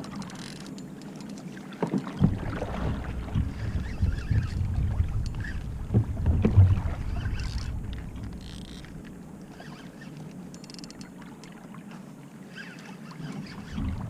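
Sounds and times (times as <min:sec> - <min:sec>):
water sloshing around a kayak: 0:00.0 - 0:14.0
knocks against the hull: 0:01.8 - 0:08.4
low rumble: 0:02.2 - 0:09.3.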